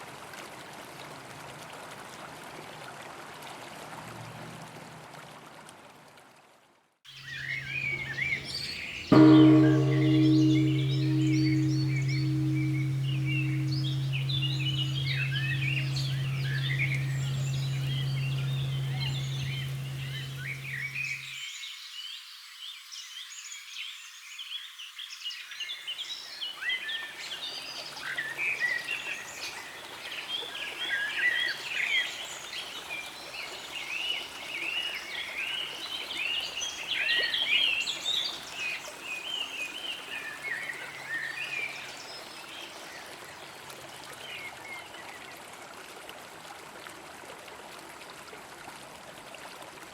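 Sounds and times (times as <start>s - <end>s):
large bell ringing: 7.2s - 21.3s.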